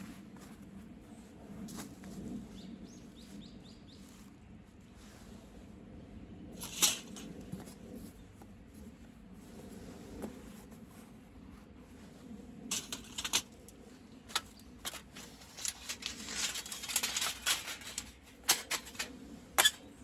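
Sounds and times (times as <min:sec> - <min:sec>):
sharp clatter: 0:14.3 - 0:19.8.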